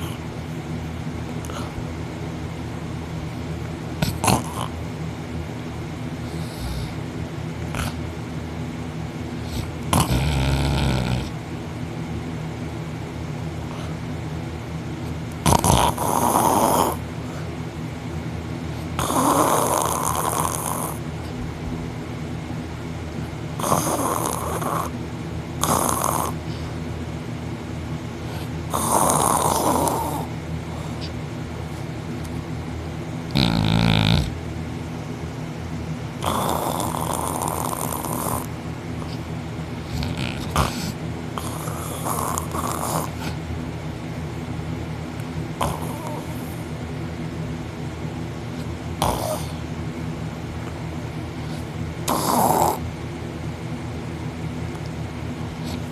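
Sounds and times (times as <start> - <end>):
steady low hum: 0.0 - 55.9
man snoring: 4.0 - 4.8, 6.3 - 7.0, 9.4 - 11.4, 15.4 - 17.0, 19.0 - 21.0, 23.6 - 25.0, 25.6 - 26.4, 28.4 - 30.3, 33.3 - 34.4, 36.2 - 38.5, 39.8 - 43.4, 45.6 - 46.4, 49.0 - 49.6, 51.5 - 52.8.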